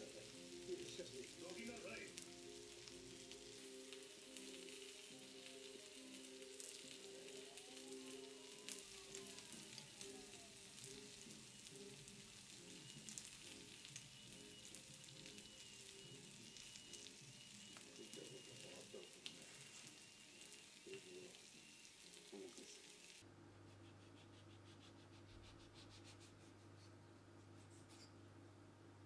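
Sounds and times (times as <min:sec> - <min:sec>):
meat sizzling on a grill: 0:00.0 - 0:23.2.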